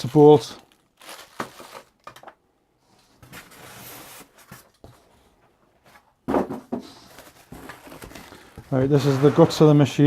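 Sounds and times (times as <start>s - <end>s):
packaging rustling: 0.0s - 2.3s, 7.1s - 8.8s.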